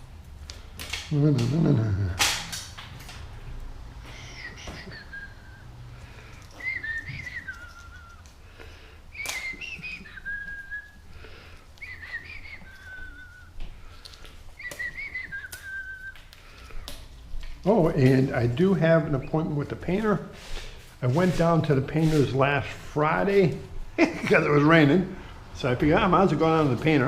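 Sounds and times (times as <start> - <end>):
man whistling a tune: 4.1 - 5.8, 6.5 - 8.3, 9.1 - 13.6, 14.5 - 16.3.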